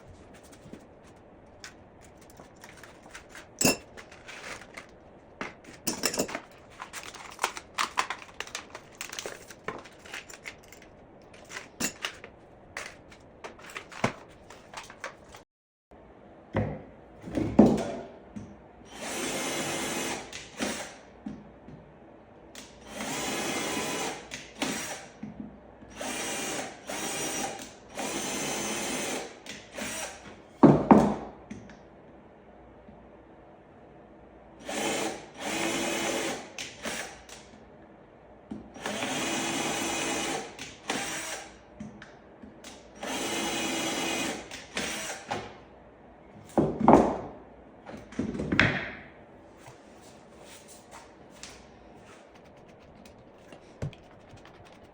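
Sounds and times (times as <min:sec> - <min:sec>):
clicks and knocks of hardware: 0:01.6 - 0:14.2
power drill driving screws: 0:22.8 - 0:25.1, 0:26.0 - 0:30.2, 0:34.7 - 0:37.3, 0:38.8 - 0:41.6, 0:43.0 - 0:45.4
heavy thumps: 0:52.0 - 0:54.9.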